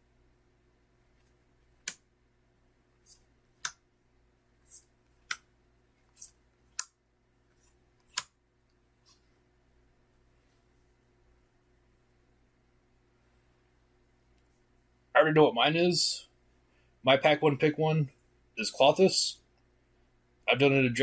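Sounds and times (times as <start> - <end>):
cards swishing together: 3.0 - 3.8, 4.6 - 5.4, 6.0 - 6.4
cards clicking: 7.6 - 8.3.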